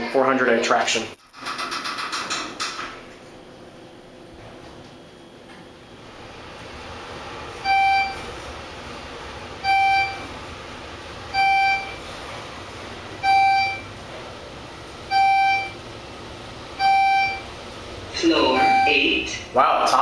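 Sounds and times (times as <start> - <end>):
elevator car humming: 1.0 - 20.0
elevator electronic beep: 7.5 - 8.4, 9.5 - 10.4, 11.3 - 12.2, 13.2 - 14.0, 15.0 - 15.9, 16.7 - 17.6, 18.2 - 19.4.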